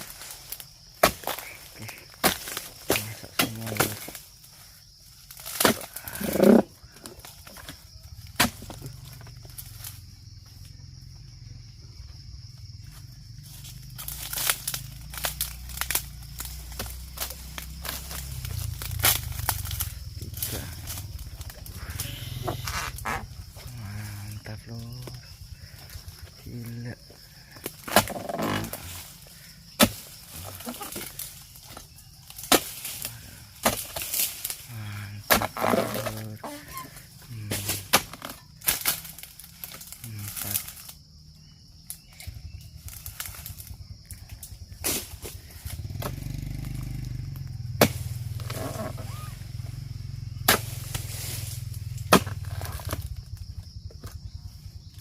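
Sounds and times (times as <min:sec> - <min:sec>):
harvesting tool chopping into palm: 0:00.1 - 0:04.2, 0:05.3 - 0:06.6, 0:08.2 - 0:08.8, 0:14.0 - 0:23.3, 0:27.6 - 0:28.8, 0:29.8 - 0:36.2, 0:37.4 - 0:40.9, 0:44.8 - 0:49.1, 0:50.4 - 0:53.2.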